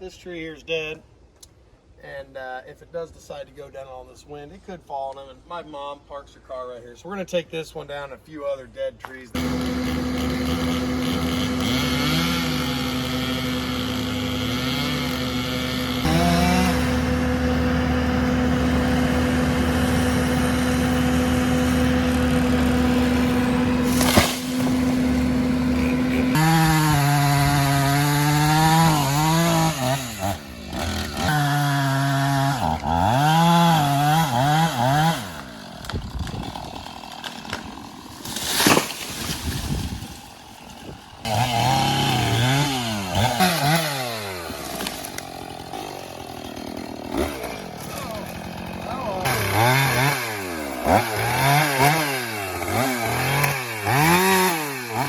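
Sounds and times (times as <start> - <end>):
chainsaw cutting and revving: 9.3 - 55.0.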